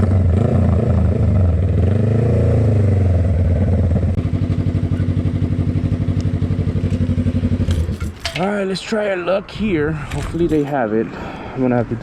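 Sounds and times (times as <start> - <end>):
motorcycle engine revving and idling: 0.0 - 8.3.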